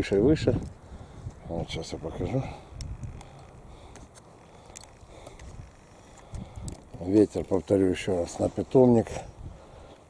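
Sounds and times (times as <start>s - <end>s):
wind buffeting microphone: 0.0s - 4.1s, 4.9s - 9.9s
faint ticks: 2.7s - 7.6s.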